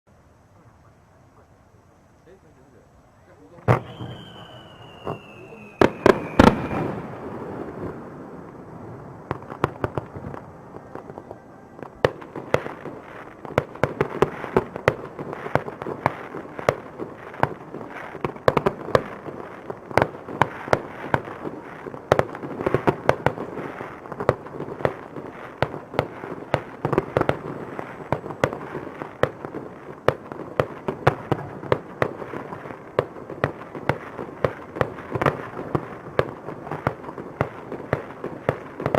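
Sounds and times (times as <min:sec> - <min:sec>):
firework shell bursts and crackle: 0:03.6 - 0:38.9
firework whistle falling: 0:03.7 - 0:07.8, 0:10.2 - 0:12.9.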